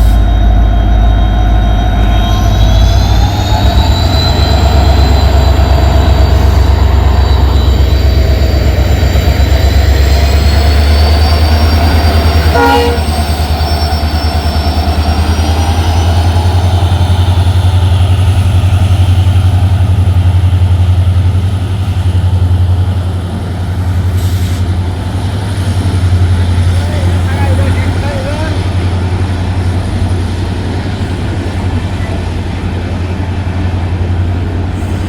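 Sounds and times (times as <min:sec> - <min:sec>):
brief tone: 0:00.0 - 0:15.2
train rumbling: 0:00.0 - 0:35.0.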